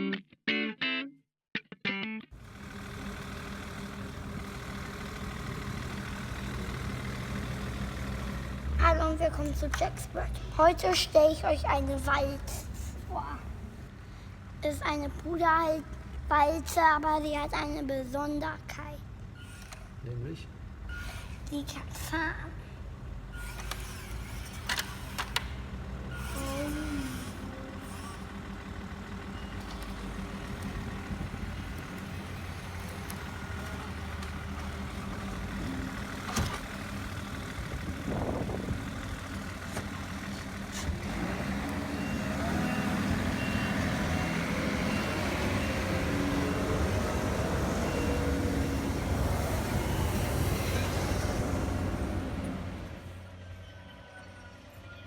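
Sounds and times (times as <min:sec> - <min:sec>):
toy electric motor humming: 0:26.2 - 0:28.3.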